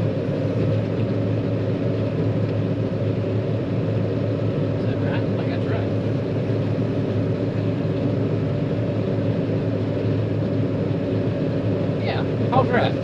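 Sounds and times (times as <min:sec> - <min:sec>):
combine harvester engine droning: 0:00.0 - 0:13.0.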